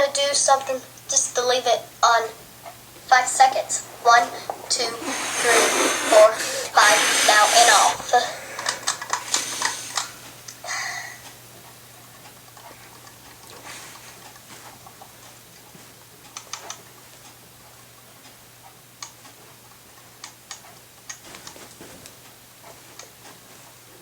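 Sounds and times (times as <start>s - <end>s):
ceiling fan coasting down: 0.0s - 15.4s
light ticks and clicks: 11.2s - 23.4s.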